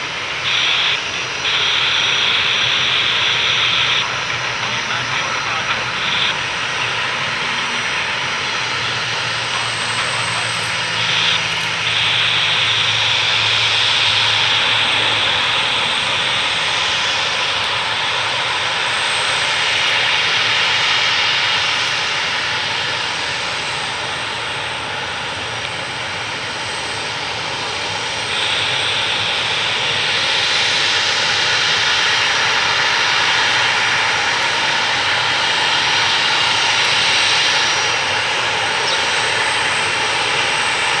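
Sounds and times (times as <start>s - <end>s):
jet engines whining: 0.0s - 41.0s.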